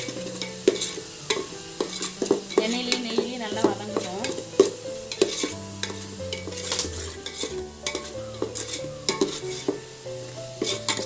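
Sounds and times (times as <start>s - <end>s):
spoon scraping a pot: 0.0s - 9.8s, 10.6s - 11.0s
light sizzle: 0.0s - 11.0s
spoon clinking against pot: 0.3s - 9.8s, 10.6s - 11.0s.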